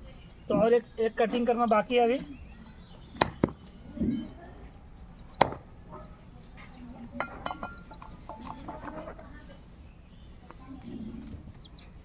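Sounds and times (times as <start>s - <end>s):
small birds chirping: 0.0s - 12.0s
blade chopping into bone: 3.1s - 3.6s, 5.4s - 5.7s.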